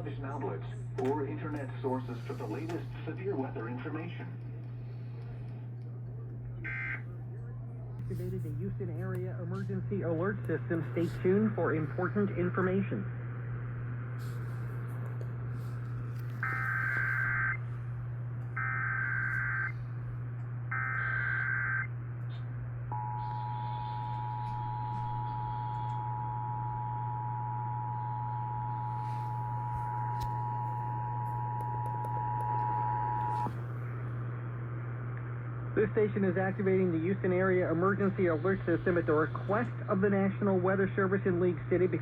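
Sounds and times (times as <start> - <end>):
constant low hum: 0.0 - 42.0
buzzy warbling data bursts: 16.4 - 17.6, 18.6 - 19.7, 20.7 - 21.9.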